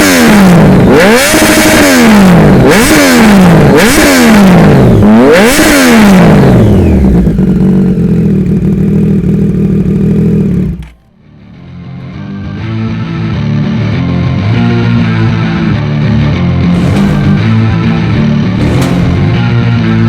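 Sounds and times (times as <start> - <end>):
motorcycle engine revving and idling: 0.0 - 11.4, 14.3 - 20.0.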